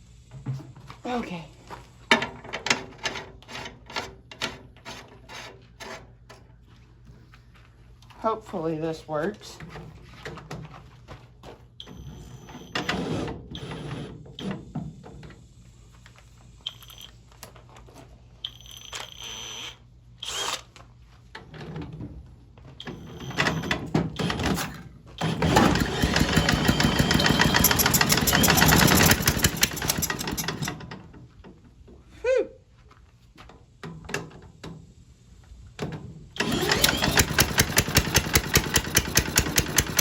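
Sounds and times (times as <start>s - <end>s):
small engine cranking and running: 18.5s - 20.7s, 22.9s - 30.9s, 36.4s - 40.0s.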